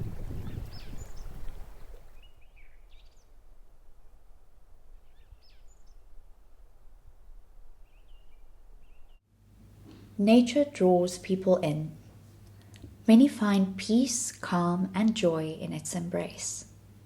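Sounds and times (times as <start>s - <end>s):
birds chirping: 0.0s - 3.3s.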